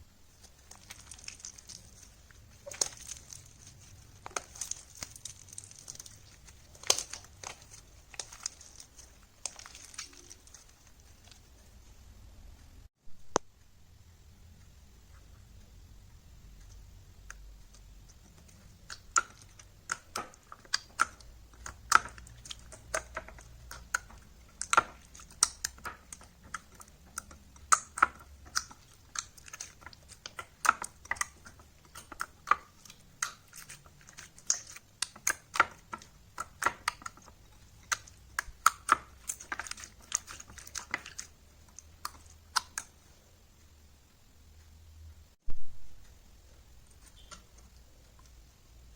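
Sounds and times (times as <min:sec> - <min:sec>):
slime clicking and popping: 0:00.4 - 0:11.0, 0:17.3 - 0:43.0.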